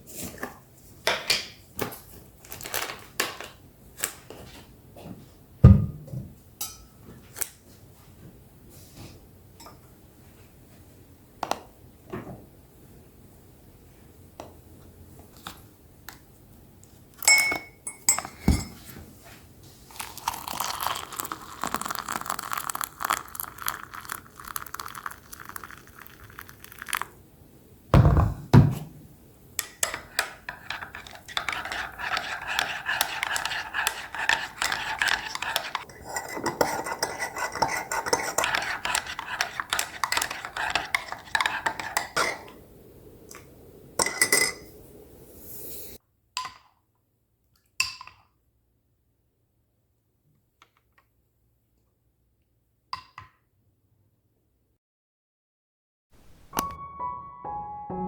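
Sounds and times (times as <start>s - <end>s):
dishes clinking: 17.2s - 19.0s, 44.0s - 44.7s
dishes and cutlery clattering: 34.2s - 42.5s.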